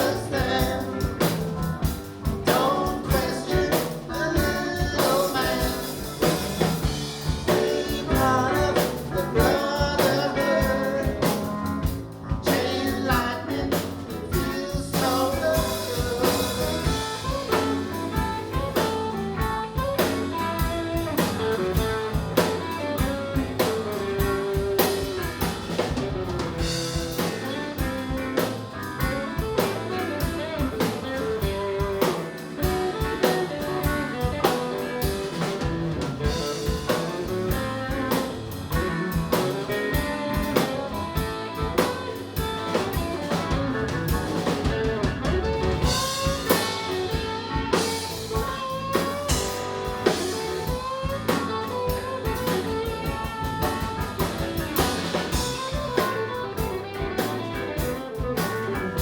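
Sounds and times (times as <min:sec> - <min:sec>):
person singing: 0:00.0 - 0:17.9
blues band playing: 0:00.0 - 0:59.0
drum kit: 0:00.0 - 0:59.0
guitar: 0:00.0 - 0:59.0.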